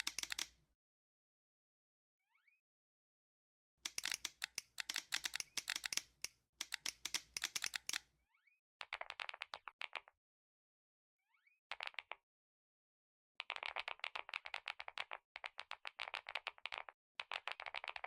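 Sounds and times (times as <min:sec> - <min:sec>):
rapid sharp clicking: 0:00.0 - 0:00.5, 0:03.9 - 0:08.0.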